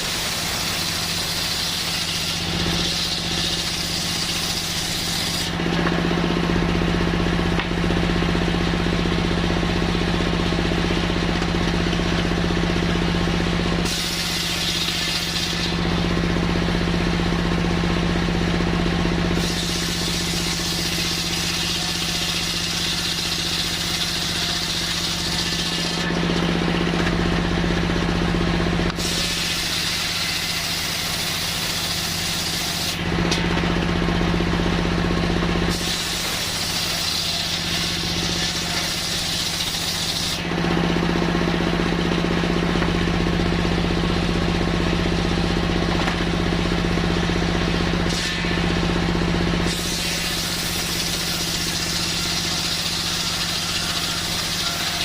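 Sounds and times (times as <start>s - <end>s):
saw high hiss: 0.0s - 5.6s, 29.0s - 33.0s, 35.7s - 40.4s
engine hum: 0.0s - 55.0s.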